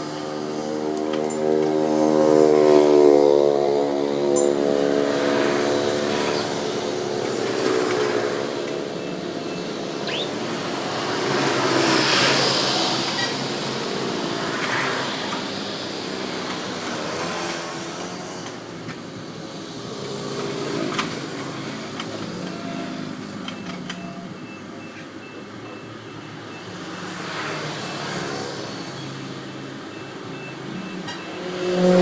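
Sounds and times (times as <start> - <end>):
diesel machinery engine running: 0.0 - 32.0
faint repeating beep: 8.9 - 10.4, 22.4 - 31.7.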